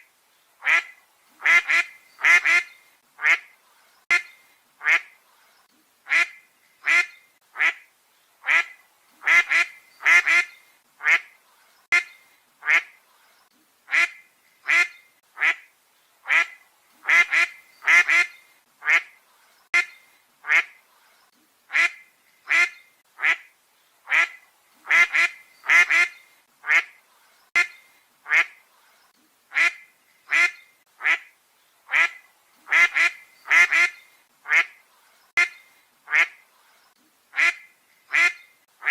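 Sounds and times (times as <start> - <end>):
duck quacking: 0.6 - 3.5, 6.1 - 11.3, 11.9 - 12.9, 13.9 - 19.1, 19.7 - 20.8, 21.7 - 23.5, 24.1 - 27.0, 27.6 - 28.6, 29.5 - 31.3, 31.9 - 34.8, 35.4 - 36.4, 37.3 - 38.9.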